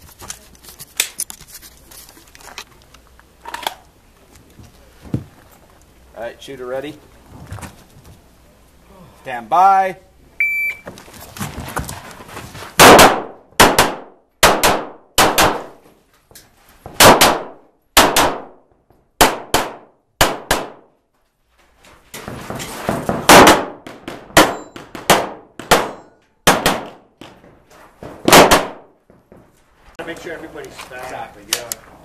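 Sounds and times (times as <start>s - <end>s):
pistol shots: 12.8s - 15.8s, 17.0s - 18.6s, 19.2s - 20.9s, 23.1s - 27.1s, 28.2s - 28.9s
metallic clang of steel targets: 24.4s - 25.0s, 25.7s - 26.4s.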